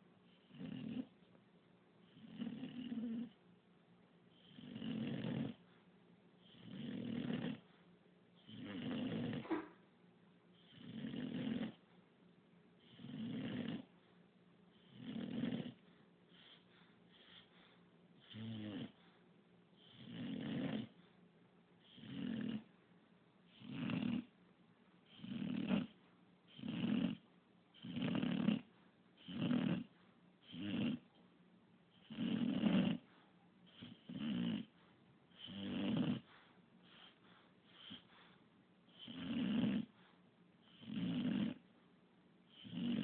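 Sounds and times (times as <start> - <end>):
dog snoring: 0.2 - 1.3, 2.0 - 3.4, 4.3 - 5.8, 6.4 - 7.8, 8.4 - 9.8, 10.6 - 11.9, 12.8 - 14.1, 14.7 - 19.2, 19.8 - 21.1, 21.8 - 22.8, 23.4 - 24.4, 25.0 - 31.2, 31.9 - 41.7, 42.5 - 43.0.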